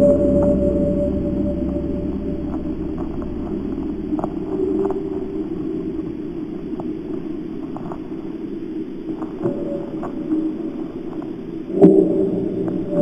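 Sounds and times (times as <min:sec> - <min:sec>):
thin tone: 0:00.0 - 0:05.2
low rumbling drone: 0:00.0 - 0:08.9
faint clicks: 0:02.5 - 0:08.4.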